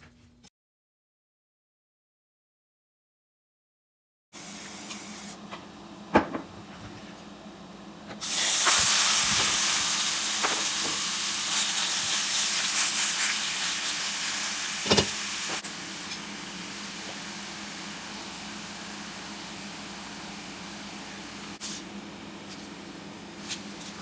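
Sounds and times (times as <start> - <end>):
food sizzling in a pan: 8.2 - 21.7.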